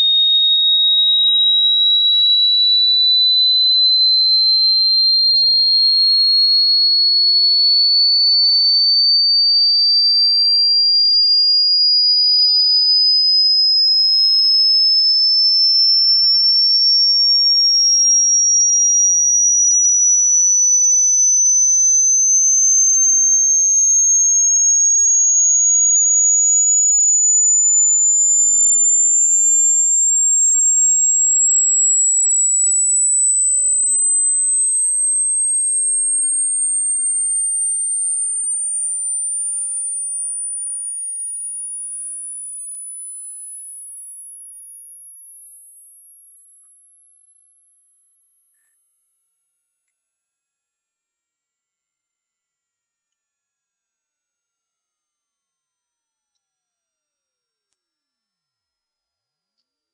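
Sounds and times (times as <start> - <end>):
rising sine tone: 0.0 - 47.8.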